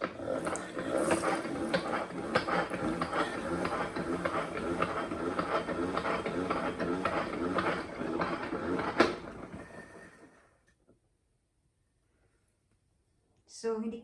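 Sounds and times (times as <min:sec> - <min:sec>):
spin mop whirring and clicking: 0:00.0 - 0:10.7.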